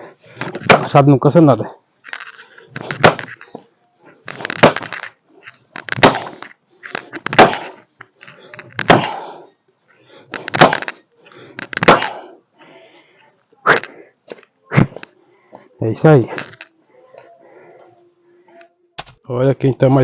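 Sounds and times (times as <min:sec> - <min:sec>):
axe chopping firewood: 0:00.6 - 0:00.9, 0:02.9 - 0:03.3, 0:04.4 - 0:04.9, 0:05.9 - 0:06.4, 0:07.3 - 0:07.8, 0:08.8 - 0:09.2, 0:10.5 - 0:10.9, 0:11.8 - 0:12.2.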